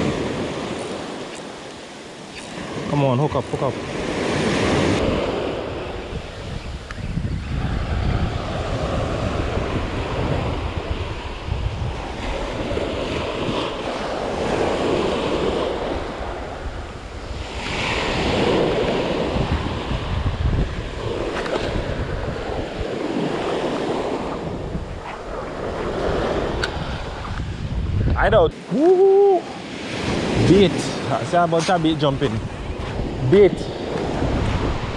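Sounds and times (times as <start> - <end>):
surf washing onto beach: 0.0 - 34.9
wind buffeting microphone: 3.8 - 34.9.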